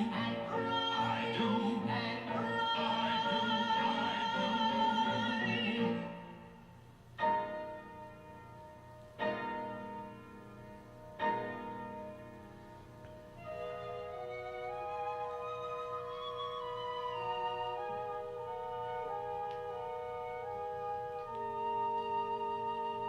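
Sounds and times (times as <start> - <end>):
sustained melody: 7.2 - 23.0.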